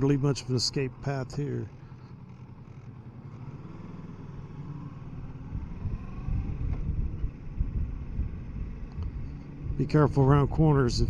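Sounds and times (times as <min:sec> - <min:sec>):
motorcycle engine running: 0:00.0 - 0:11.0
wind rumble on microphone: 0:05.4 - 0:11.0.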